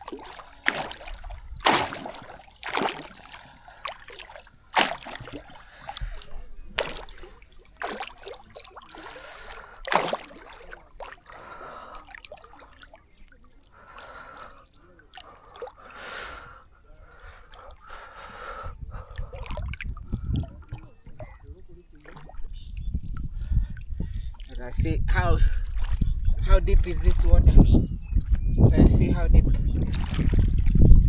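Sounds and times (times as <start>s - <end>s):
water splashing and sloshing: 0.0s - 27.6s, 29.4s - 31.0s
breathy gasps: 8.9s - 9.9s, 11.3s - 12.4s, 13.7s - 19.6s.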